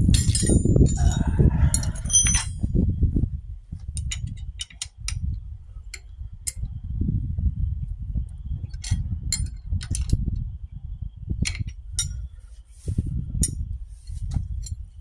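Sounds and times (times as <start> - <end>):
metal tools clinking on steel: 0.0 - 2.6, 8.7 - 10.2, 11.4 - 12.2
steady low rumble: 0.0 - 15.0.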